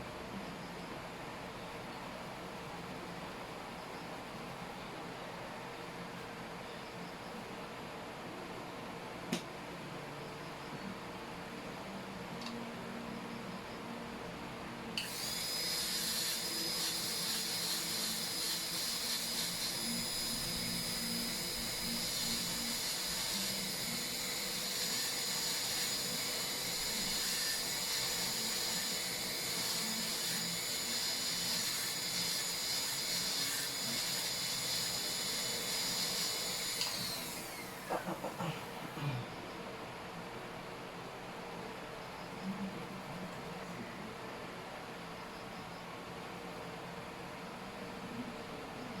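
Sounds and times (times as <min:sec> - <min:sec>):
dental drill whine: 0:15.0 - 0:38.3.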